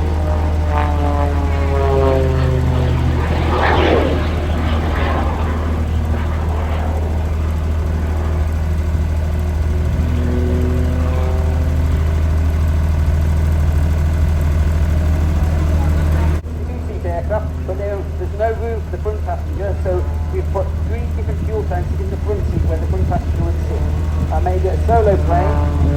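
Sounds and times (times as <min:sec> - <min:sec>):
aircraft propeller engine droning: 0:00.0 - 0:25.9
steady low rumble: 0:00.0 - 0:25.9.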